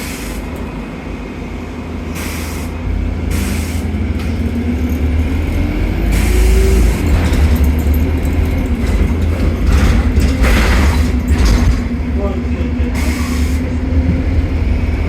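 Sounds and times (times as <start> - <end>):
air hisses: 0.0 - 0.5, 2.1 - 4.4, 6.1 - 7.0, 12.9 - 13.8
bus engine rumble: 0.0 - 15.0
rising engine whine: 2.8 - 15.0.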